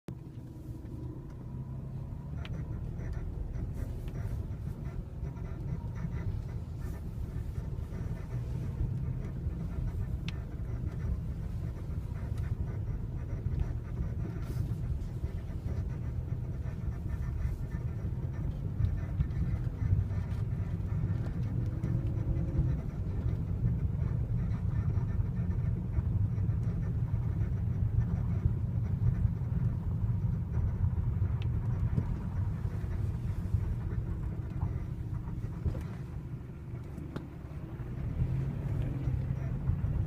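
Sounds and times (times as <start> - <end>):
car low rumble: 0.0 - 40.0
car suspension squeaking: 0.2 - 40.0.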